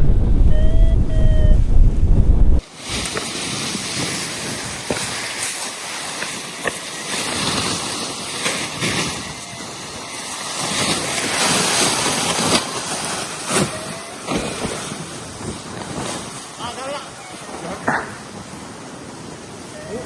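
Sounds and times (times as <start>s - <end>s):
gusty wind buffeting microphone: 0.0s - 5.6s.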